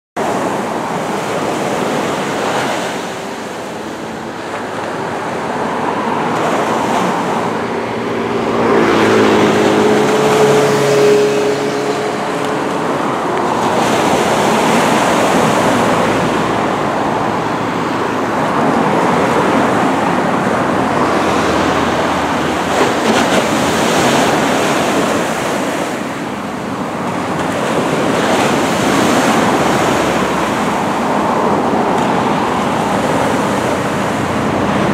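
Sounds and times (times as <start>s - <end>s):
surf washing onto shore: 0.2s - 34.9s
low engine hum: 3.1s - 34.9s.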